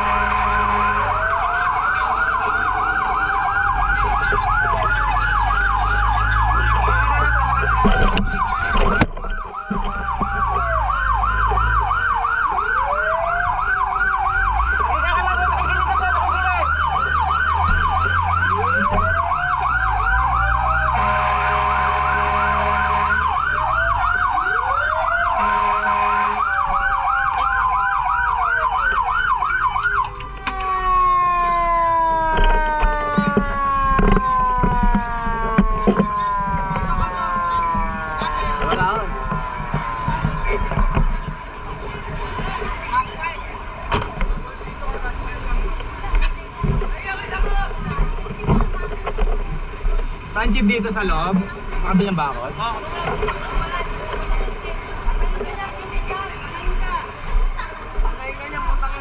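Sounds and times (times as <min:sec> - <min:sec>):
horn blasts: 0:00.0 - 0:01.7, 0:20.5 - 0:26.9
siren rising and falling: 0:00.0 - 0:45.6
fire truck siren yelping: 0:00.0 - 0:59.0
slow falling siren wail: 0:00.0 - 0:59.0
vehicle engine rumbling: 0:00.0 - 0:59.0.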